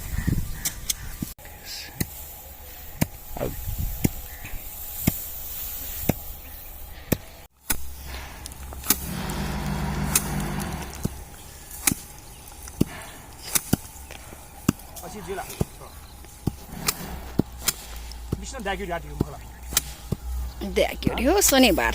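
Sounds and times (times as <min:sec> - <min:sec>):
sickle cutting dry stalks: 0:02.0 - 0:20.4
stalks rustling: 0:07.6 - 0:20.4.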